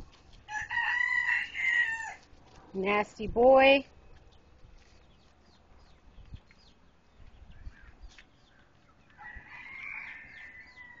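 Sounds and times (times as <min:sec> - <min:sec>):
rooster crowing: 0:00.5 - 0:02.2, 0:09.1 - 0:11.0
poultry chirping: 0:04.0 - 0:11.0.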